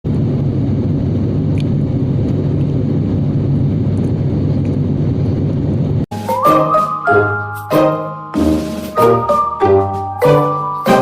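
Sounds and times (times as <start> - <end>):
airliner cabin engine drone: 0.1 - 6.1.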